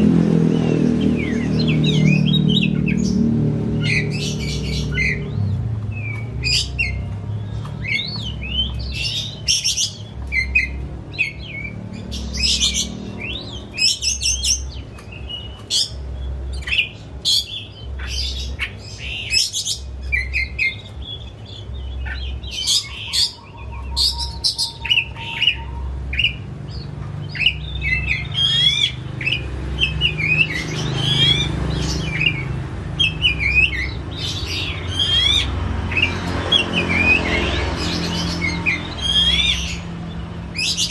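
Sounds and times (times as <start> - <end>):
bird singing: 0.0 - 40.9.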